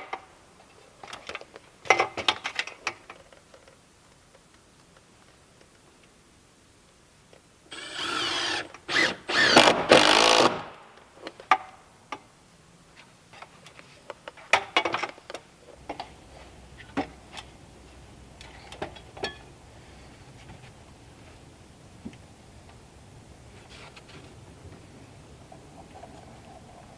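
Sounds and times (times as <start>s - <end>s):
power drill running: 7.7s - 10.9s.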